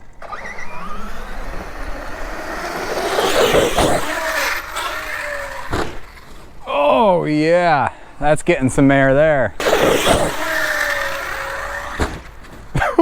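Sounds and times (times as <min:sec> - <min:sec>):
drivetrain and tyre noise: 0:00.0 - 0:13.0
electric motor whining: 0:00.0 - 0:13.0.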